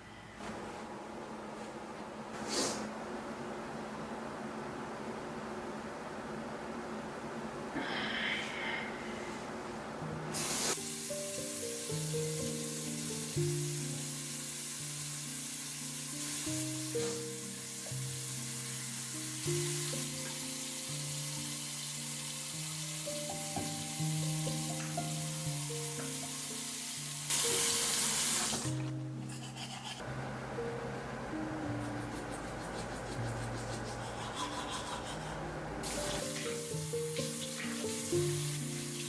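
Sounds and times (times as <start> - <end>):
instrumental background music: 10.0 - 39.0.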